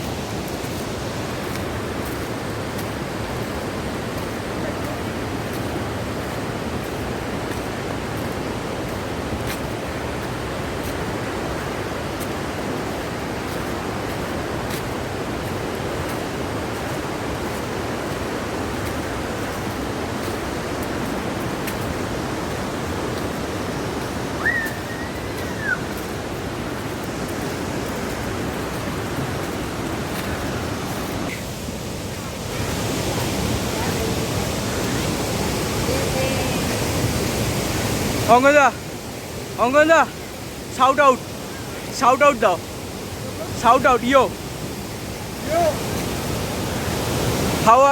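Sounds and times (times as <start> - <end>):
waterfall roar: 0.0 - 47.9
high whistle-like tone: 24.4 - 26.0.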